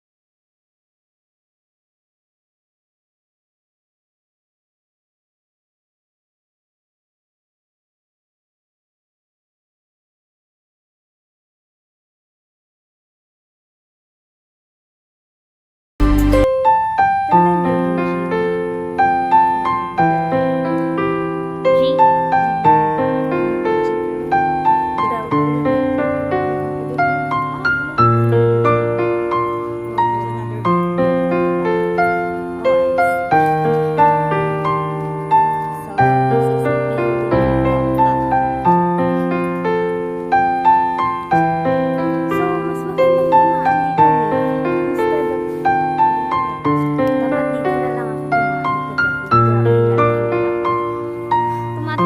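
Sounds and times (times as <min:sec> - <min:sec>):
gentle piano piece: 0:16.0 - 0:52.0.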